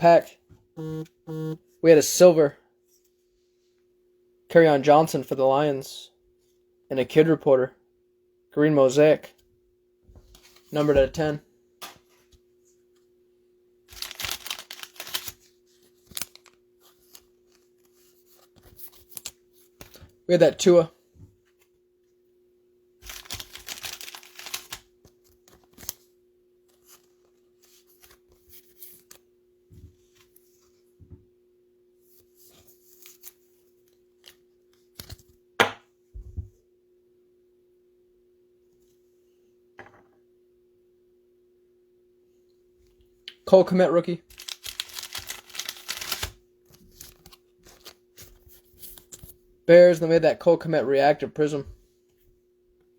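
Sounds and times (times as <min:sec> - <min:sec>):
faint steady hum: 0:00.0 - 0:52.9
cards rustling and clicking: 0:13.9 - 0:20.2, 0:23.0 - 0:26.0, 0:26.7 - 0:29.2, 0:32.2 - 0:35.3, 0:44.3 - 0:49.4.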